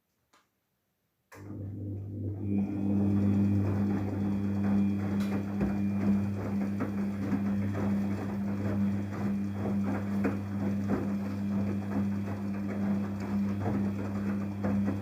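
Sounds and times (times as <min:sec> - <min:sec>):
washing machine hum: 0:01.4 - 0:15.0
water and laundry splashing: 0:01.5 - 0:15.0.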